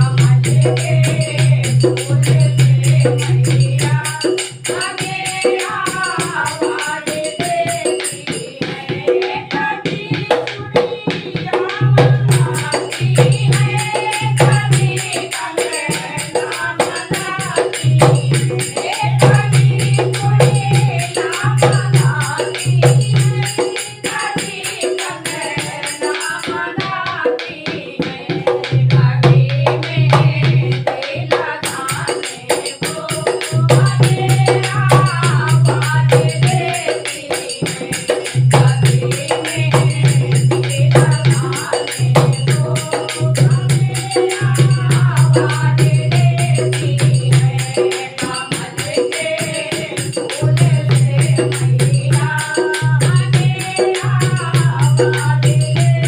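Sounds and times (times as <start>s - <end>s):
person singing devotional song: 0.0s - 56.0s
tambourine jingles: 31.6s - 56.0s.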